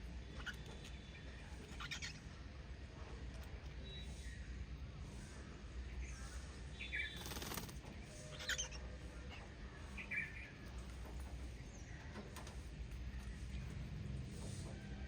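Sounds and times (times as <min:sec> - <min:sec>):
parrots chirping: 0:00.2 - 0:01.0, 0:01.6 - 0:02.2, 0:08.3 - 0:08.8.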